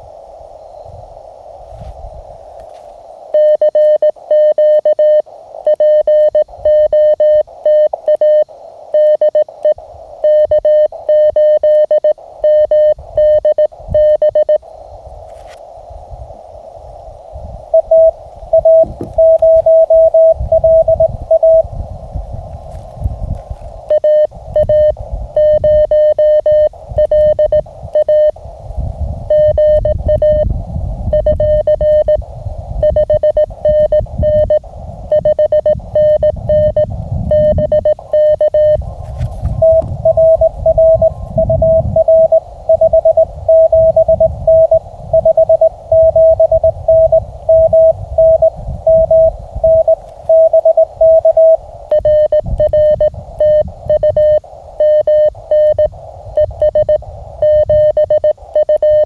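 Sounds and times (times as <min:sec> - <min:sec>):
receiver hiss: 0:00.0 - 0:59.0
morse code tones: 0:02.7 - 0:14.8, 0:17.7 - 0:28.4, 0:29.2 - 0:59.0
low rumble: 0:34.2 - 0:49.9.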